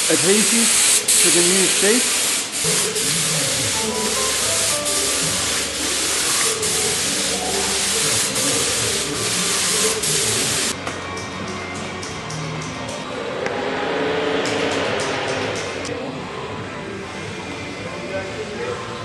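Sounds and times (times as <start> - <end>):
loud steady hiss: 0.0 - 10.8
music with steady beat: 3.7 - 6.0.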